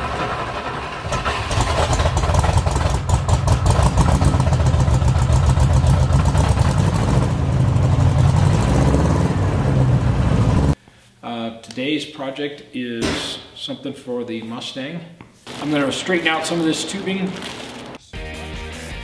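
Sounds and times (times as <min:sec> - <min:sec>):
car engine running: 0:00.0 - 0:10.8.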